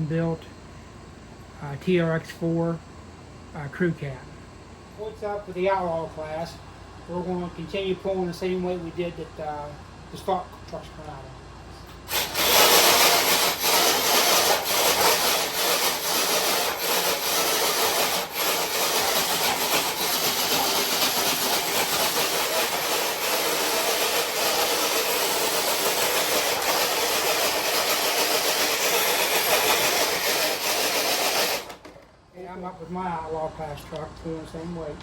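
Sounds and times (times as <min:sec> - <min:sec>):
sled scraping along floor: 0:12.2 - 0:31.9.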